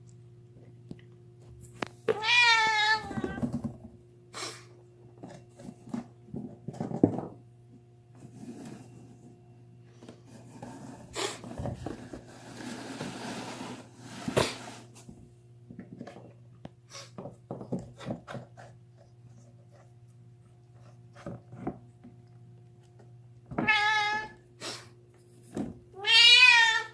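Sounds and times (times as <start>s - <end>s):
cat yowling: 26.0s - 26.9s.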